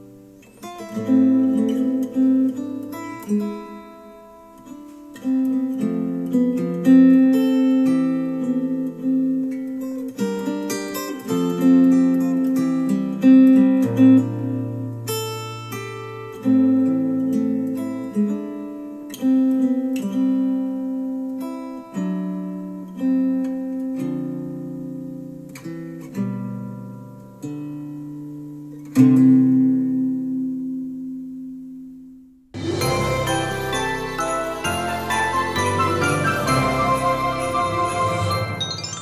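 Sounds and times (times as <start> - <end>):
slow acoustic guitar music: 0.0 - 39.0.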